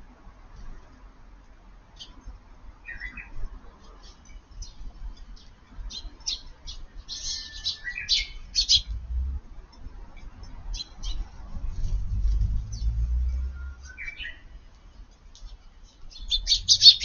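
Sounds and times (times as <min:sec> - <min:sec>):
sparrows chirping: 0:02.0 - 0:03.4, 0:04.0 - 0:09.0, 0:10.7 - 0:14.6, 0:15.3 - 0:17.0
low rumble: 0:11.5 - 0:13.9.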